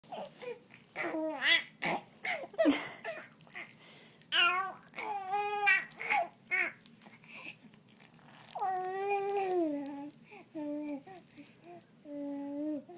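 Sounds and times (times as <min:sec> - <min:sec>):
baby babbling: 0:00.1 - 0:03.7, 0:04.3 - 0:06.8, 0:08.6 - 0:11.2.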